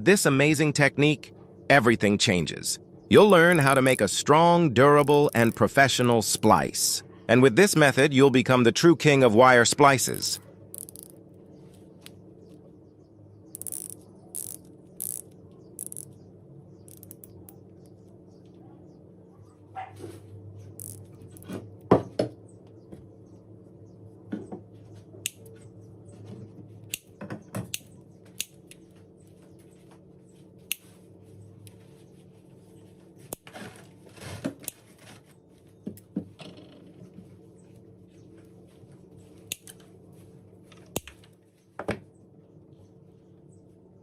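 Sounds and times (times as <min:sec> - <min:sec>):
steady low hum: 0:00.0 - 0:44.0
tool clicks and wire snips: 0:10.8 - 0:11.2, 0:13.6 - 0:16.1, 0:16.9 - 0:17.3, 0:27.7 - 0:28.8, 0:39.5 - 0:39.8.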